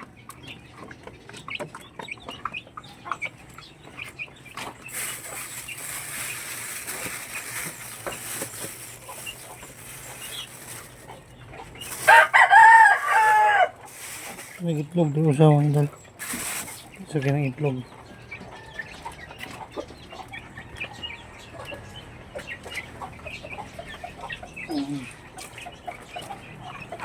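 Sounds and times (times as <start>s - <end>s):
chickens clucking softly: 0.0s - 27.0s
rooster crowing loudly: 12.0s - 13.8s.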